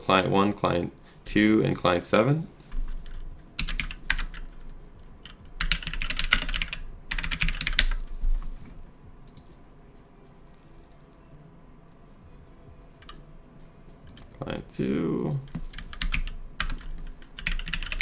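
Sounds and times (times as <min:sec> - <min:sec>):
keyboard typing: 0:02.9 - 0:08.1, 0:13.0 - 0:13.2, 0:14.0 - 0:14.3, 0:15.3 - 0:18.0.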